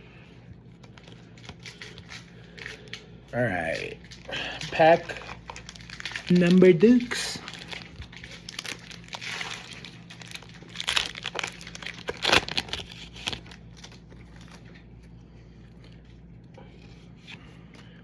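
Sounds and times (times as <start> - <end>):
foil wrapper tearing and crinkling: 0.7 - 14.9.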